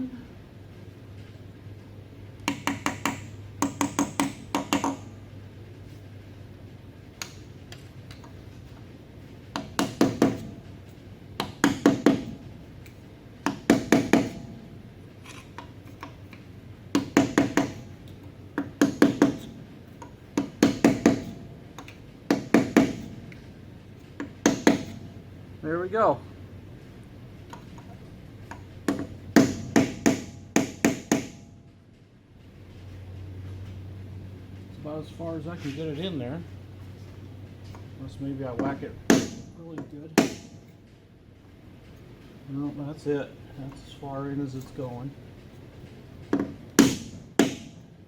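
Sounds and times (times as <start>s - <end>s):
hammer tapping metal: 2.4s - 5.2s, 9.5s - 10.7s, 11.4s - 14.7s, 16.9s - 23.5s, 24.2s - 25.3s, 28.5s - 31.5s, 38.6s - 40.8s, 46.3s - 47.8s.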